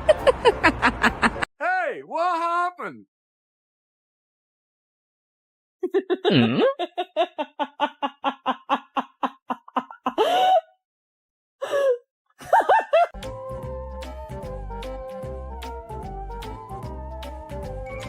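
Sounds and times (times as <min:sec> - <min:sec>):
person laughing hard: 0:05.8 - 0:10.6, 0:11.6 - 0:13.1
background music: 0:13.2 - 0:18.0.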